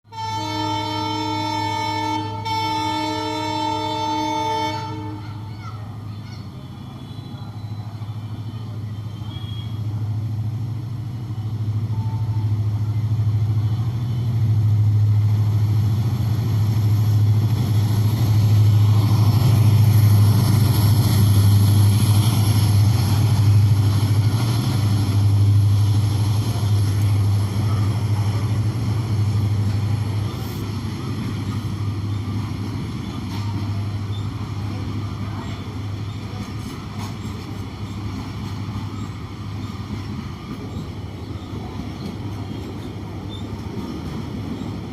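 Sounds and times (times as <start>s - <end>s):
locomotive horn: 0.1s - 5.5s
diesel locomotive engine hum: 0.1s - 44.9s.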